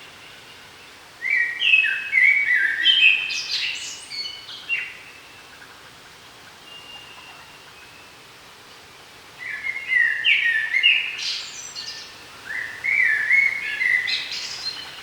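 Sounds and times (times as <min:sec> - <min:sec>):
songbird singing: 0:00.0 - 0:05.9, 0:06.5 - 0:15.0
background hiss: 0:00.0 - 0:15.0.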